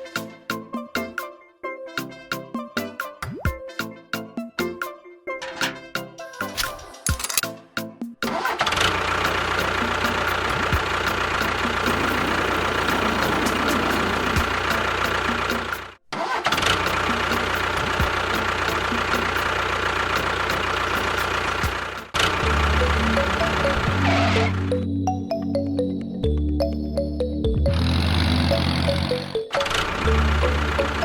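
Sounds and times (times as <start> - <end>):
engine running steadily: 8.4 - 24.8, 27.7 - 31.0.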